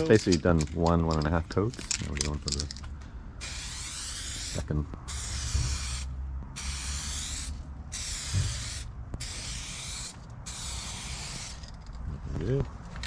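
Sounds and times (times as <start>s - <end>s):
aerosol can spraying: 3.4s - 11.8s.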